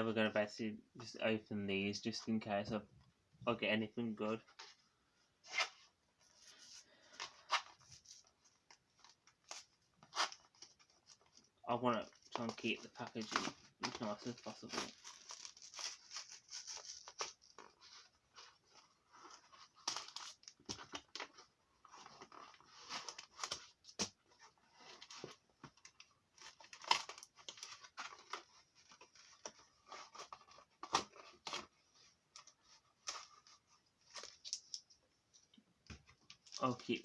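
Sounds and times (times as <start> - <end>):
packaging rustling and tearing: 7.2 - 34.9.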